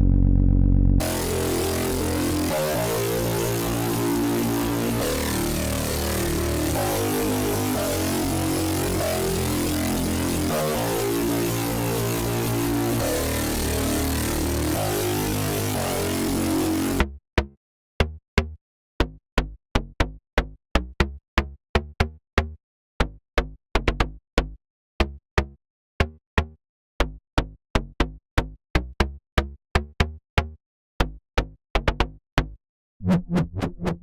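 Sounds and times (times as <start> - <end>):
sustained dense bass sound: 0.0 - 17.5, 33.0 - 34.0
staccato synth bass notes: 0.0 - 21.6, 31.4 - 34.0.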